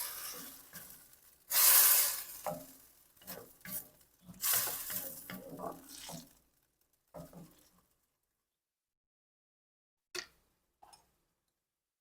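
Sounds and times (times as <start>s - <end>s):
stirring shrimp in simmering sauce: 0.0s - 6.5s, 7.1s - 8.0s.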